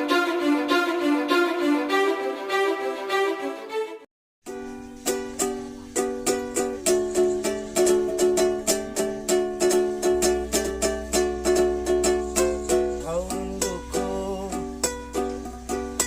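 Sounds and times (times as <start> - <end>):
ukulele strumming chords: 0.0 - 3.8, 4.5 - 16.0.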